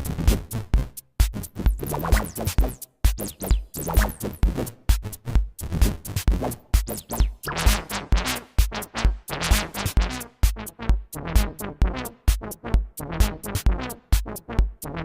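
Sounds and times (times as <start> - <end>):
kick drum: 0.0 - 15.0
hi-hats: 0.3 - 10.6
synthesizer sequenced line: 1.7 - 4.5, 6.8 - 15.0.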